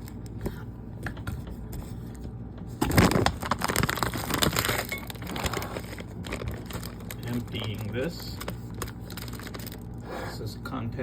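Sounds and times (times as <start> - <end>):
plastic bag crinkling: 2.8 - 10.0.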